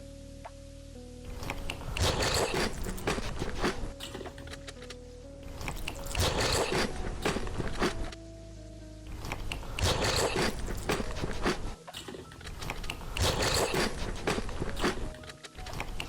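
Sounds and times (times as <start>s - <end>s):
crunchy food chewing: 1.4s - 4.9s, 5.6s - 8.2s, 9.2s - 16.0s.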